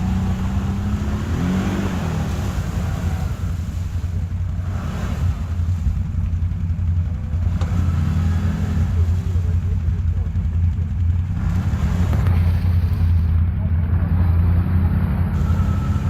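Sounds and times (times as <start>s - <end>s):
atv engine running: 0.0s - 16.0s.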